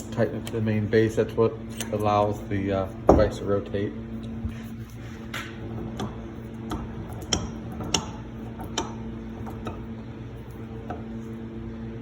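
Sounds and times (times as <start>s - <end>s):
bench vise clicking: 5.4s - 9.8s.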